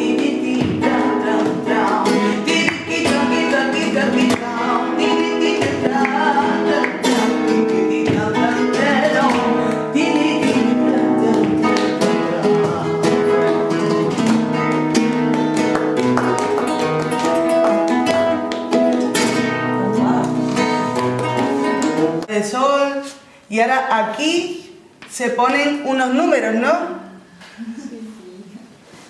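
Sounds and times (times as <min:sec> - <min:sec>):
flamenco acoustic guitar strumming: 0:00.0 - 0:22.3.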